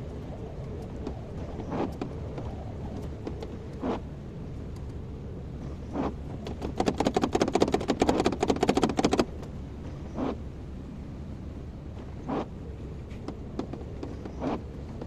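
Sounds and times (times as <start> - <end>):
low engine hum: 0.0 - 15.0
rapid clicking clatter: 6.0 - 9.4.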